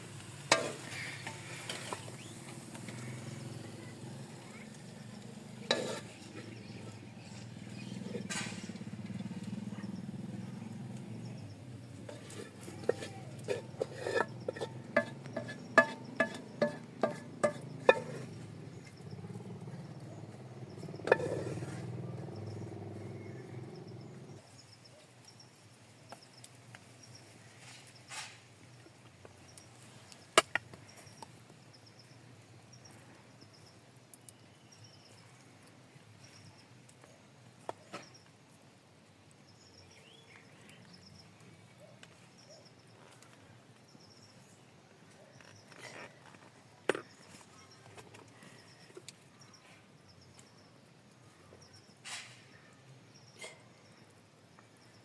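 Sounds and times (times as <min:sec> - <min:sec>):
metal utensils clinking on cookware: 0:00.4 - 0:02.1, 0:04.8 - 0:07.1, 0:12.0 - 0:18.4, 0:20.9 - 0:22.0
faint insect chirping: 0:08.8 - 0:55.0.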